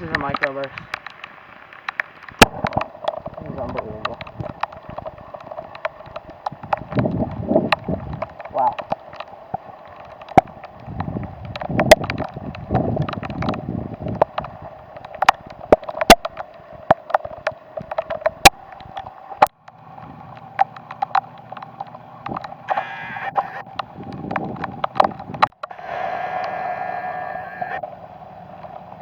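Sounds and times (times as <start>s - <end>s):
rain pattering: 0.0s - 29.0s
wind buffeting microphone: 2.3s - 29.0s
low hum: 17.6s - 29.0s.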